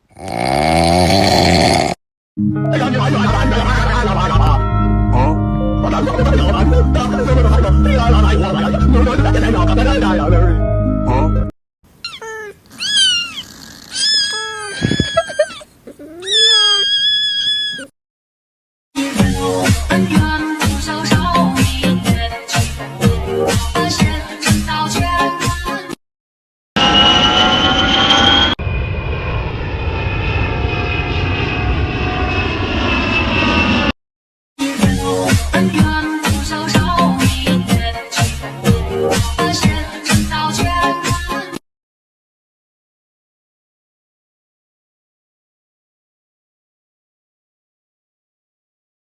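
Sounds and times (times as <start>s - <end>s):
cat meowing: 12.0s - 17.9s
airplane engine drone: 26.8s - 33.9s.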